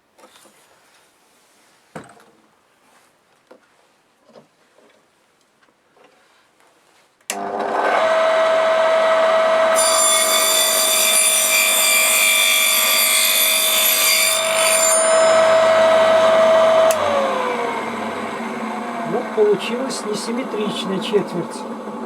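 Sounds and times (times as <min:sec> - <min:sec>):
circular saw whine: 0:07.9 - 0:20.8
saw rasping through wood: 0:09.7 - 0:18.0.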